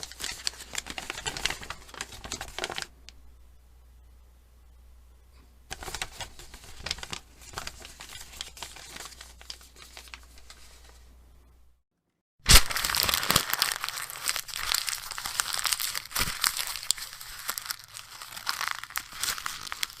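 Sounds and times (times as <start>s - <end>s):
paper crumpling: 0.0s - 2.9s, 5.7s - 11.0s, 12.5s - 20.0s.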